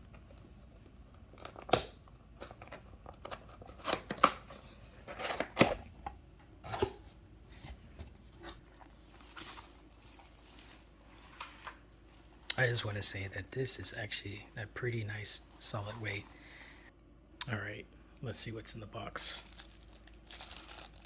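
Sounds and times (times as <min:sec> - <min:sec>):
cardboard rustling: 0:00.1 - 0:12.4.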